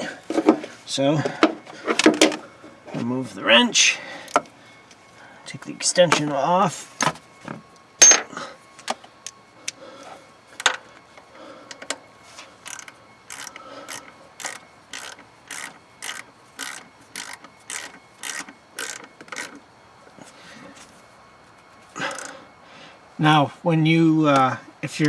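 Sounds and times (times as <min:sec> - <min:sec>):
socket ratchet clicking: 0:12.7 - 0:19.6, 0:22.1 - 0:22.3.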